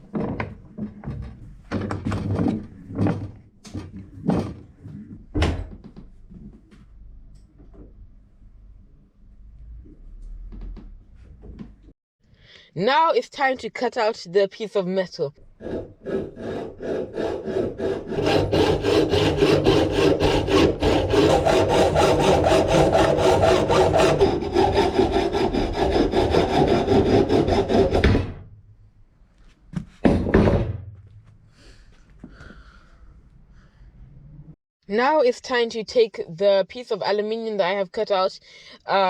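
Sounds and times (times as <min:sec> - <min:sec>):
saw cutting metal tube: 0:15.6 - 0:28.4.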